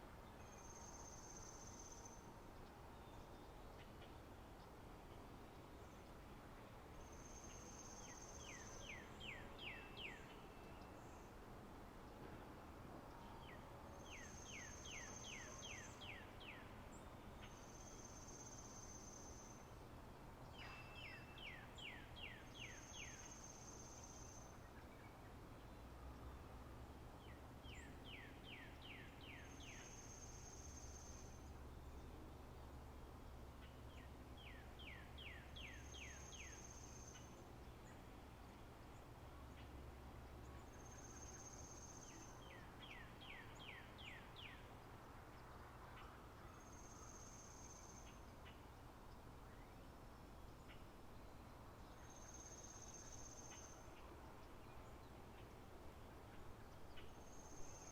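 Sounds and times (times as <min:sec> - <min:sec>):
faint low hum: 0:00.0 - 0:57.9
songbird singing: 0:00.0 - 0:57.9.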